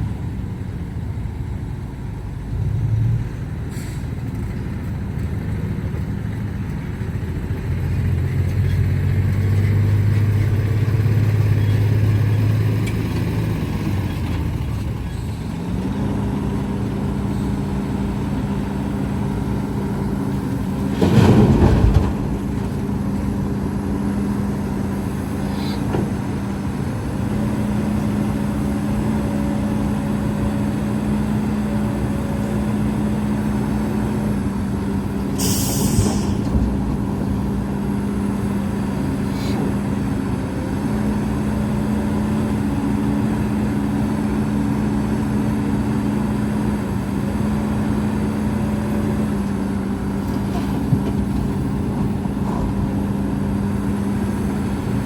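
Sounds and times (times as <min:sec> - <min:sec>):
diesel machinery engine running: 0:00.0 - 0:55.0
short high hiss: 0:35.4 - 0:36.4.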